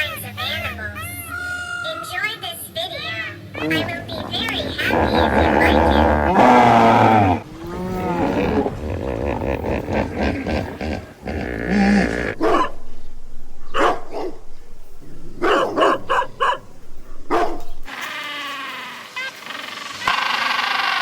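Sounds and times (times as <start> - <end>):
dog barking: 12.4 - 17.9.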